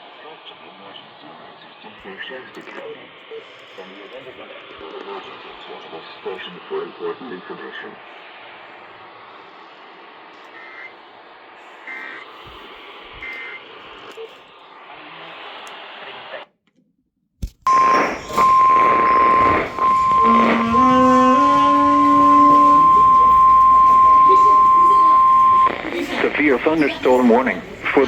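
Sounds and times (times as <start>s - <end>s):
faint radio hiss: 0.0s - 16.6s, 23.1s - 28.0s
rising stepped lower tones: 17.7s - 25.9s
loud steady alarm tone: 17.7s - 28.0s.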